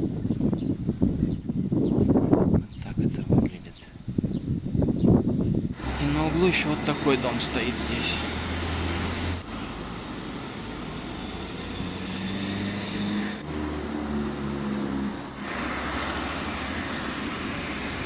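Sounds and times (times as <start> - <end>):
road noise: 5.6 - 18.0
vehicle engine drone: 5.8 - 18.0.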